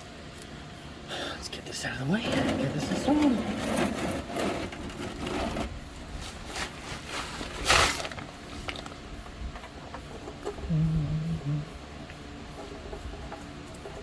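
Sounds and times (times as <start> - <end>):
loud rustle or scrape: 2.2 - 8.6.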